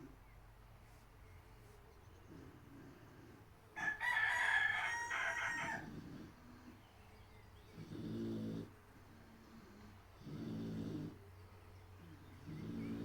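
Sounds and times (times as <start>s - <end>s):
rooster crowing: 3.8s - 5.9s
pig snoring: 7.6s - 11.4s, 12.2s - 13.0s.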